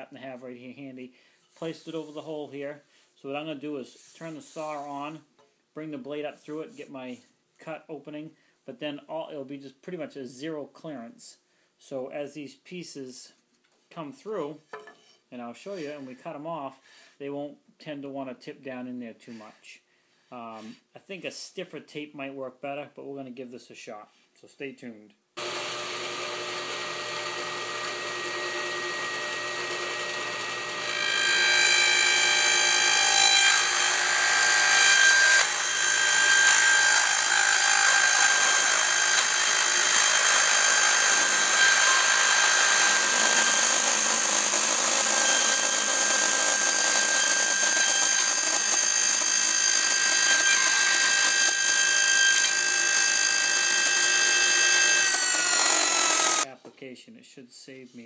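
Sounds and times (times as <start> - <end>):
table saw whining: 25.4 - 56.5.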